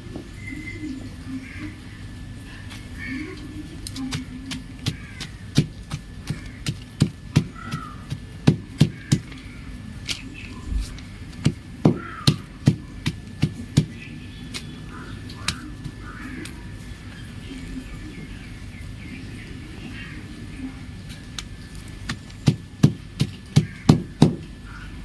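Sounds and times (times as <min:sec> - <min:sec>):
chalk crunching and cracking: 0:03.8 - 0:16.6, 0:21.3 - 0:24.4.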